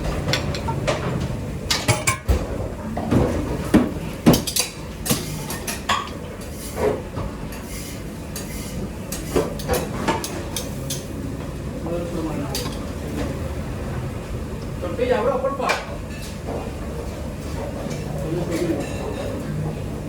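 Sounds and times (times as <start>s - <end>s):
pots and pans clattering: 0.0s - 11.1s.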